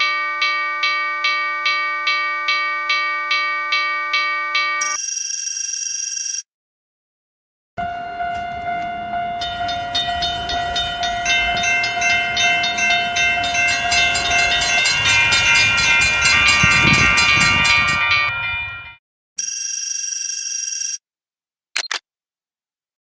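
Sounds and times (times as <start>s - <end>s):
cartoon train horn tones: 7.8s - 18.2s.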